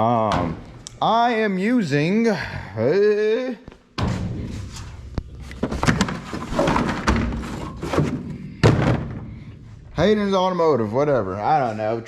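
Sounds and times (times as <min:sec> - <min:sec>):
knocks and thumps: 0:04.0 - 0:09.5.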